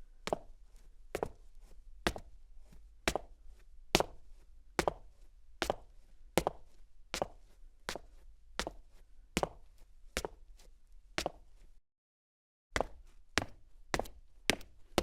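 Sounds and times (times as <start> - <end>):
boot footsteps on cement: 0.3 - 0.5, 12.8 - 14.8.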